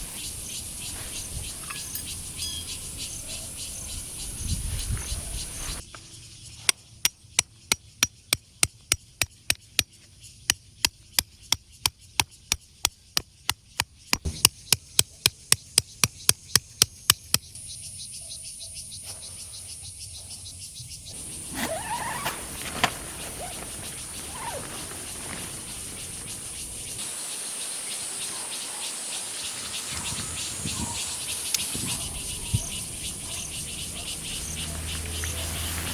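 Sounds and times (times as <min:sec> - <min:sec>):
crickets chirping: 0:00.0 - 0:35.9
hammer striking tent stake: 0:10.8 - 0:17.5.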